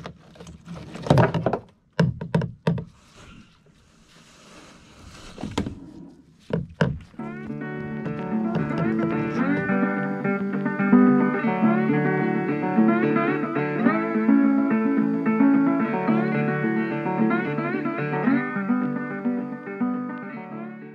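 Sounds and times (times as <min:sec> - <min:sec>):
plucked guitar tune: 0:06.8 - 0:20.9.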